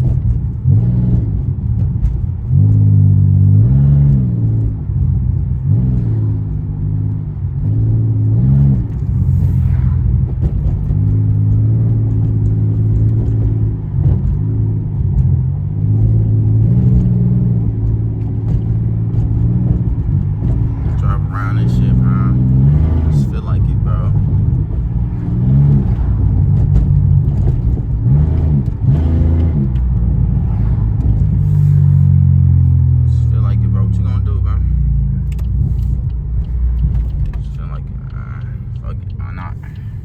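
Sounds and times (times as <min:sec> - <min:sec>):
car engine low drone: 0:00.0 - 0:40.0.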